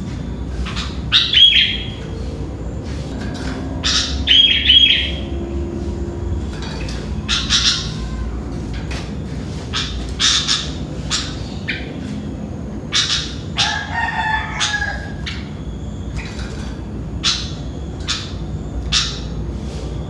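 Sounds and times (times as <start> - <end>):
bird chirping calls: 0.0 - 20.0
rooster crowing: 13.6 - 15.7.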